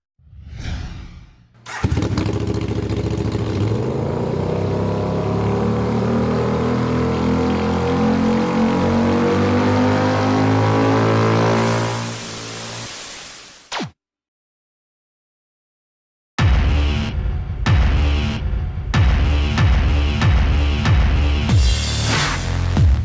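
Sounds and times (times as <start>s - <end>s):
brief whoosh: 0.2s - 1.8s
motorcycle engine running: 1.7s - 9.2s.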